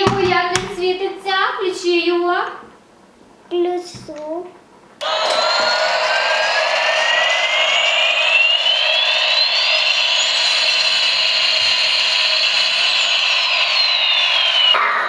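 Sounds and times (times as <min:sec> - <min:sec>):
toy jet engine sound effect: 0:05.0 - 0:15.0.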